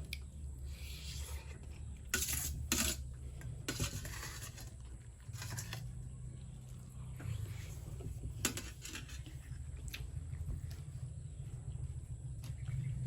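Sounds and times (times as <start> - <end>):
low steady hum: 0.0 - 13.0
cutlery clicks and scrapes: 2.1 - 3.1, 8.4 - 9.2.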